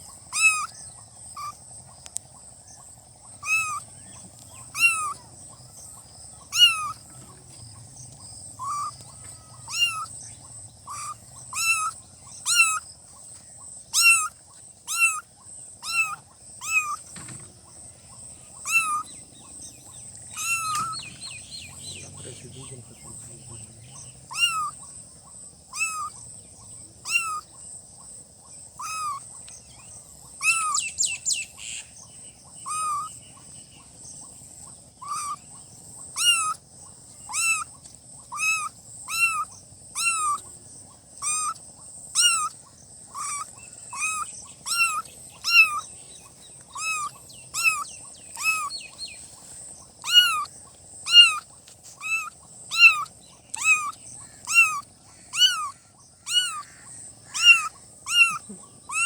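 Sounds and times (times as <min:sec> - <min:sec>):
kittens meowing: 0:00.0 - 0:01.6, 0:03.4 - 0:04.0, 0:04.6 - 0:05.3, 0:06.4 - 0:07.5, 0:08.6 - 0:10.2, 0:10.9 - 0:12.9, 0:13.9 - 0:17.4, 0:18.5 - 0:19.6, 0:20.3 - 0:22.8, 0:24.2 - 0:24.8, 0:25.7 - 0:26.2, 0:27.0 - 0:27.5, 0:28.8 - 0:29.3, 0:30.4 - 0:30.9, 0:32.7 - 0:33.1, 0:35.0 - 0:35.4, 0:36.1 - 0:36.6, 0:37.3 - 0:40.4, 0:41.2 - 0:41.6, 0:42.2 - 0:45.9, 0:46.6 - 0:49.0, 0:50.0 - 0:59.0.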